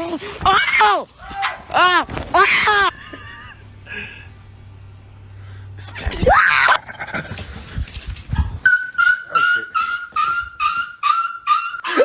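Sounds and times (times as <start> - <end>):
scream-like cry: 5.9 - 7.1, 9.0 - 12.0.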